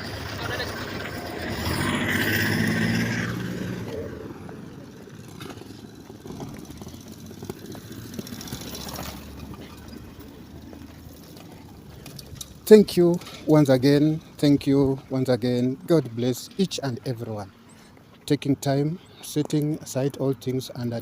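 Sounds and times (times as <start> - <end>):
vehicle passing close by: 0.0 - 12.6
street background: 0.0 - 21.0.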